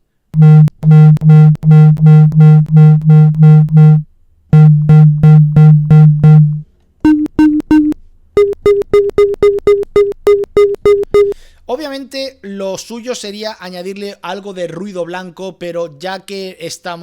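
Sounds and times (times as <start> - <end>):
short repeated feedback tones: 0.4 - 11.4.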